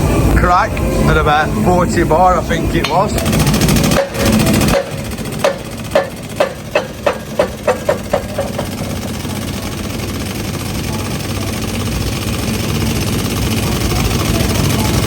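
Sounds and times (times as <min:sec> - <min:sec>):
loud rushing noise: 0:00.0 - 0:08.6
steady mechanical drone: 0:00.0 - 0:15.0
sharp metallic knocks ringing: 0:02.8 - 0:09.6.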